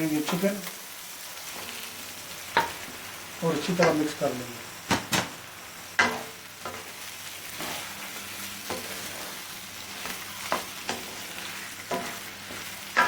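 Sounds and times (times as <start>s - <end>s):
chicken sizzling in hot oil: 0.0s - 13.0s
spoon scraping a pan: 6.0s - 6.9s, 7.5s - 8.0s, 8.6s - 13.0s.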